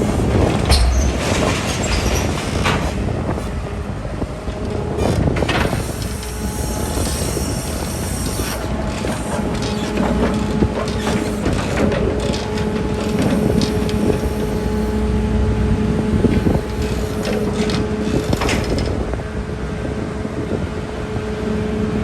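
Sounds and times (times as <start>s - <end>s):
metallic clanks and rattles: 0.0s - 3.6s
diesel engine running: 0.0s - 20.2s.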